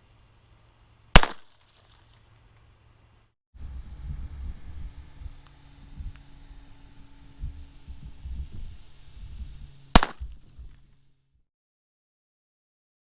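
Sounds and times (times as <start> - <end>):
handgun shot: 1.2 - 1.6, 10.0 - 10.5
low rumbling microphone noise: 3.6 - 11.2.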